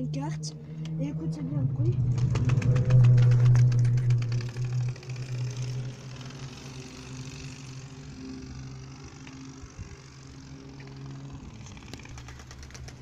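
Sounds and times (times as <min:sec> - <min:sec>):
cards rattling against bicycle spokes: 0:11.6 - 0:13.0.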